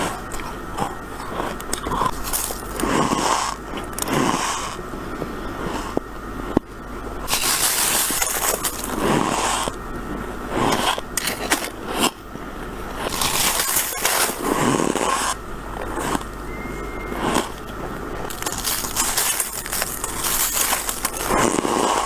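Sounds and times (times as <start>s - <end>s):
frost being crunched by teeth: 0.3s - 4.2s, 7.3s - 9.7s, 13.1s - 16.4s, 18.2s - 22.0s.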